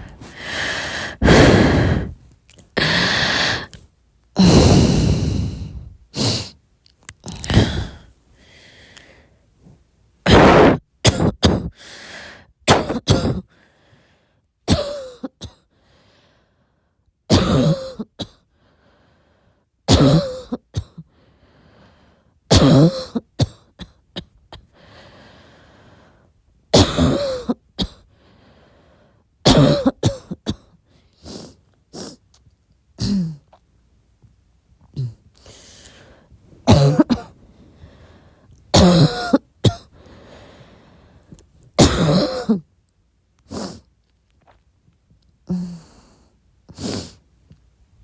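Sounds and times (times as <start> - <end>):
person breathing: 0.0 - 2.2, 2.8 - 3.8, 4.4 - 6.6, 7.3 - 9.5, 11.7 - 12.5, 13.5 - 14.5, 15.7 - 17.0, 18.5 - 19.7, 21.1 - 22.4, 24.7 - 26.3, 28.1 - 29.3, 35.4 - 36.4, 37.4 - 38.6, 40.0 - 41.4
person coughing: 10.3 - 11.8, 12.7 - 13.5, 14.7 - 15.6, 17.3 - 18.4, 19.9 - 21.0, 22.5 - 24.7, 26.8 - 28.0, 29.5 - 30.7, 33.0 - 33.4, 36.7 - 37.4, 38.7 - 39.9, 41.8 - 42.6.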